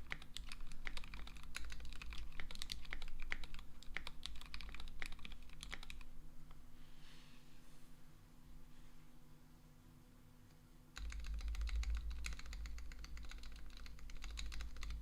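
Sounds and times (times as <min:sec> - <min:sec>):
mechanical keyboard keystroke clacks: 0:00.0 - 0:06.0, 0:11.0 - 0:15.0.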